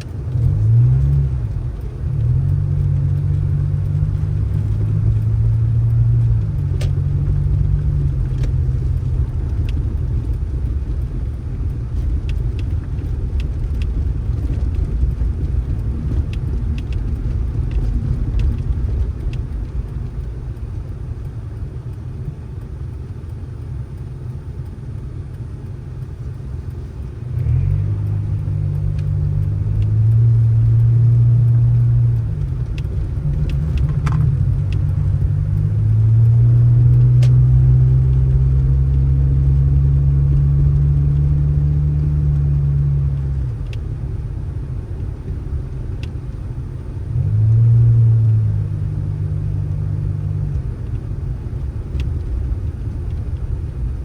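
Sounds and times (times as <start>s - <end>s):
vehicle engine rumbling: 0.0s - 54.0s
faint clicks: 1.1s - 39.1s, 49.7s - 54.0s.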